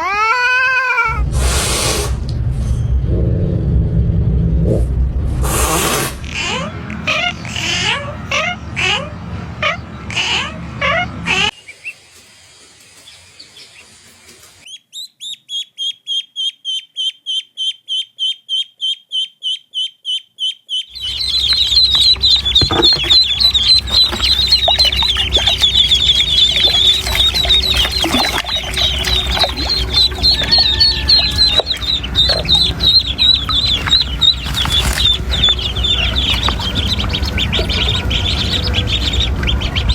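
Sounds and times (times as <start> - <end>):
cat mewing: 0.0 - 1.3, 6.0 - 11.6
duckling peeping: 6.2 - 12.1, 13.0 - 39.9
ducklings peeping together: 6.2 - 39.9.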